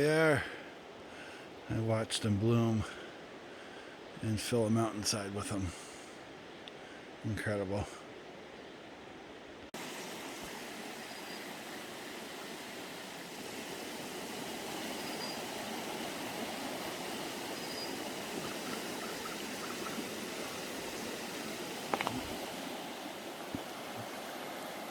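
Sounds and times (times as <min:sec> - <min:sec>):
creek water rushing: 0:09.8 - 0:24.9.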